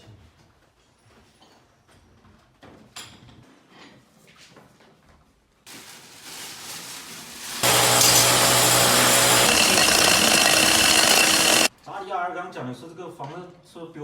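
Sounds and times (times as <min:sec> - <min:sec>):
power tool running: 0:07.6 - 0:11.7.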